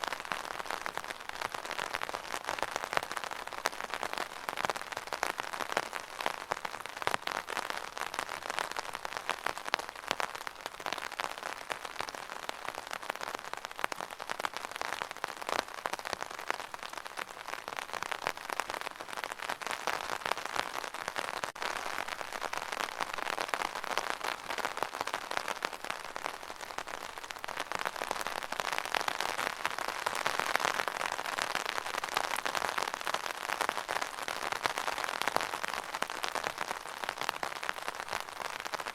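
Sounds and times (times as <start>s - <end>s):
rain on an umbrella: 0.0s - 38.9s.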